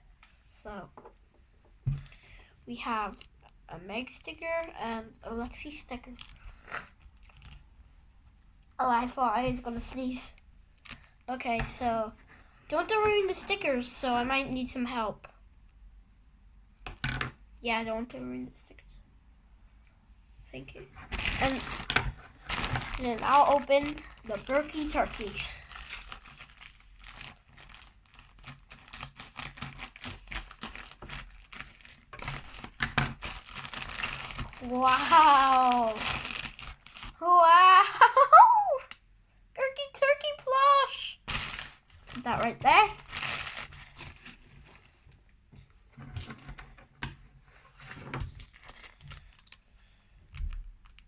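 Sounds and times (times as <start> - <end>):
plastic packaging clicks and crinkles: 3.1 - 7.6, 9.8 - 11.8, 21.1 - 37.2, 41.3 - 45.3, 48.1 - 49.7, 50.3 - 51.0.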